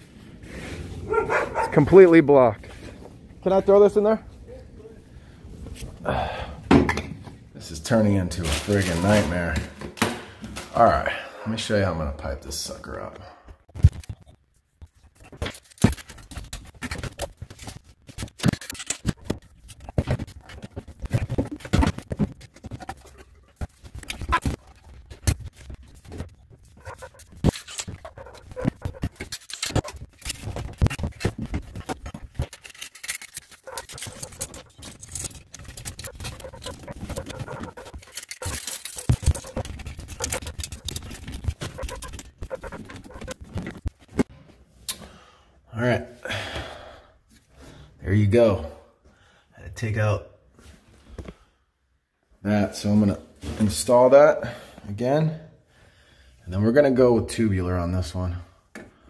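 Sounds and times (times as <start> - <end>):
drain parts clicking and scraping: 13.7 - 44.3.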